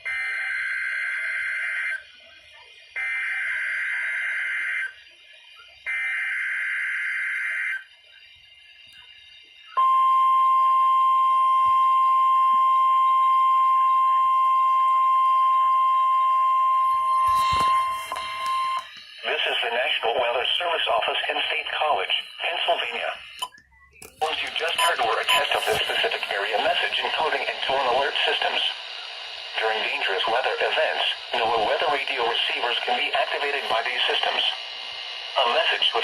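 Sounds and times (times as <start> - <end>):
steady warning alarm tone: 0.0 - 36.0
radio crackle: 16.8 - 36.0
buzzy digital header bursts: 24.2 - 34.6.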